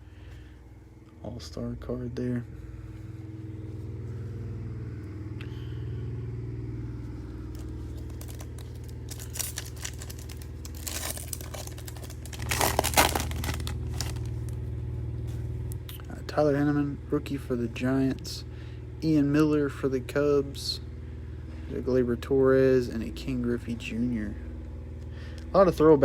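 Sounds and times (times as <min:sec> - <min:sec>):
steady low hum: 0:00.0 - 0:26.0
foil wrapper crinkling and tearing: 0:07.5 - 0:14.6.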